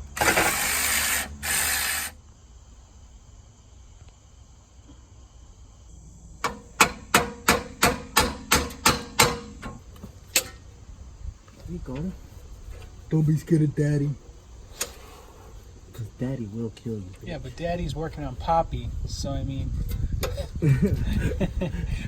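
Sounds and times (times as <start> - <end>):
hammer blows on metal: 6.4 - 9.8.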